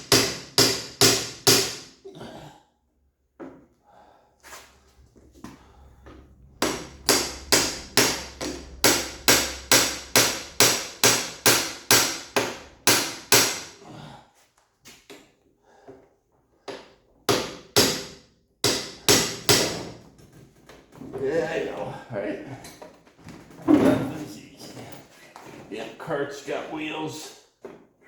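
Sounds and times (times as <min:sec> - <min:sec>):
hammer striking metal frame: 0:00.0 - 0:02.0, 0:06.6 - 0:13.8, 0:16.7 - 0:20.4.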